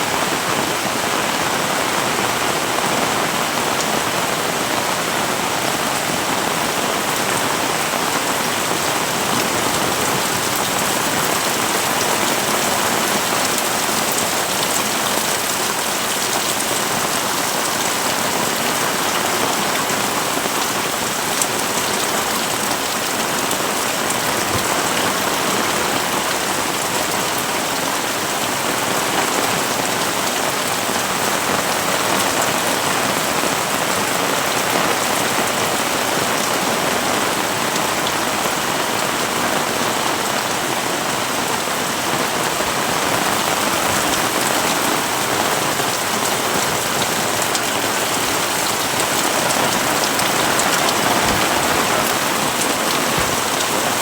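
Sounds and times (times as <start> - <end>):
heavy rain: 0.0 - 54.0.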